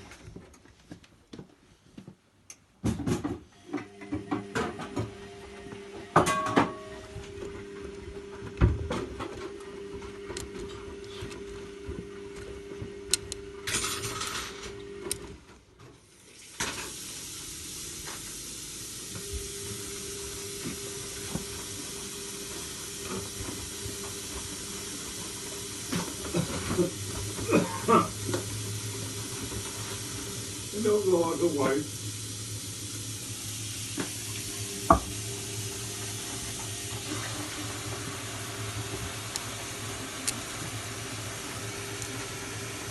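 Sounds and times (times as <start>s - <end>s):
running water rushing: 16.2s - 42.9s.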